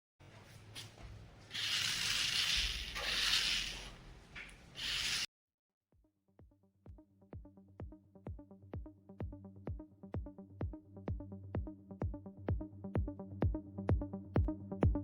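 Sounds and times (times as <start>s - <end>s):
rough hissing rubbing noise: 1.5s - 4.0s, 4.8s - 5.3s
electronic music beat: 6.9s - 15.0s.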